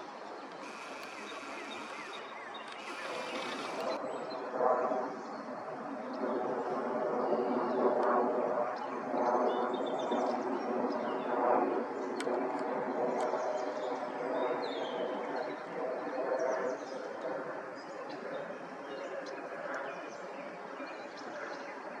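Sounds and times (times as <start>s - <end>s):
small birds chirping: 0.1s - 4.0s.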